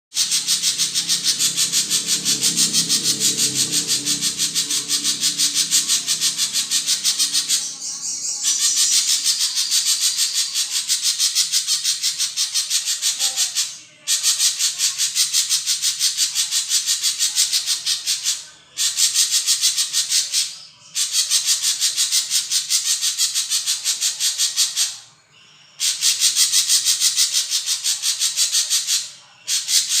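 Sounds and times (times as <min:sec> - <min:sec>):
songbird rattling trill: 0:00.2 - 0:25.0.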